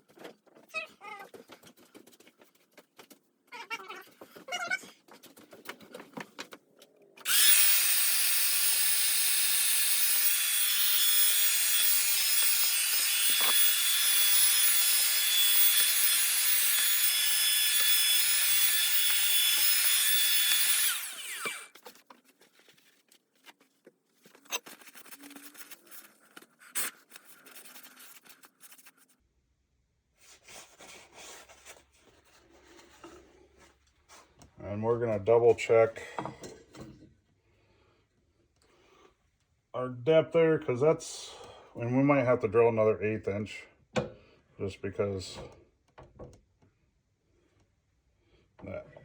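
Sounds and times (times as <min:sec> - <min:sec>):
handling knocks and clicks: 0:04.2 - 0:07.1
drill grinding into metal: 0:07.2 - 0:21.8
power drill whining: 0:07.2 - 0:22.0.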